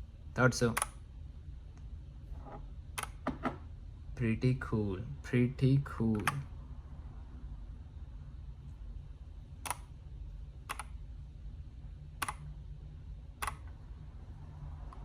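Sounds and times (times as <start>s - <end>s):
faint low hum: 0.0s - 15.0s
mechanical keyboard key clicks: 10.7s - 10.9s, 12.2s - 12.4s.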